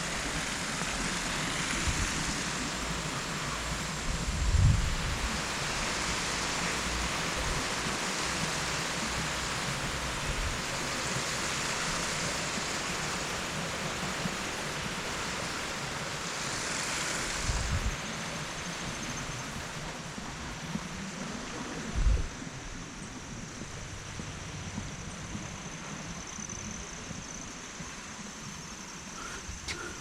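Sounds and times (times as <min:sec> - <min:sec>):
pressure washer spraying: 0:00.0 - 0:20.7.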